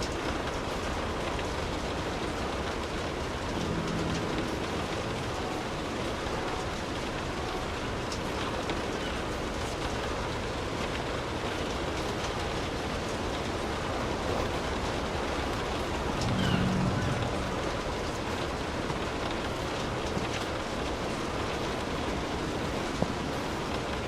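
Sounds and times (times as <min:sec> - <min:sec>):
steady rainfall: 0:00.0 - 0:24.0
low rumble: 0:03.2 - 0:06.8, 0:15.9 - 0:18.6.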